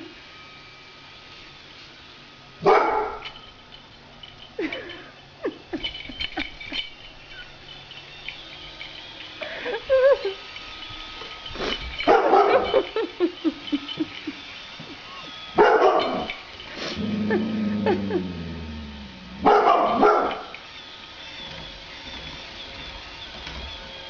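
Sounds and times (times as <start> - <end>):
dog barking: 2.6 - 3.2, 12.1 - 12.7, 15.6 - 16.3, 19.4 - 20.5.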